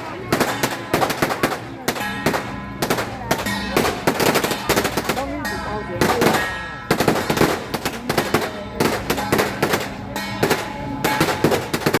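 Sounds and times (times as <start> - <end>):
firecrackers crackling: 0.0 - 12.0.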